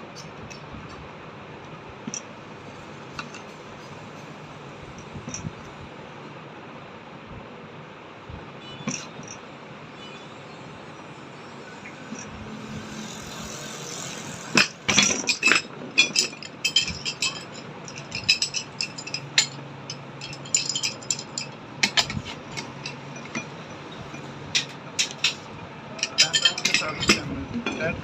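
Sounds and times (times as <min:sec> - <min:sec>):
metal tools clinking: 0:14.5 - 0:28.0.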